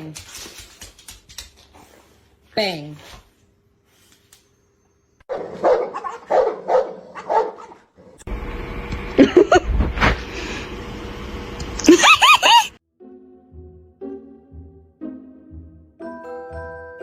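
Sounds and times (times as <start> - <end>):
dog barking: 5.3 - 7.8.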